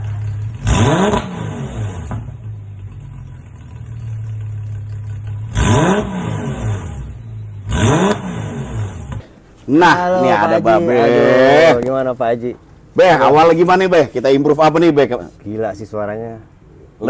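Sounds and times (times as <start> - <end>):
car engine idling and revving: 0.0 - 9.4.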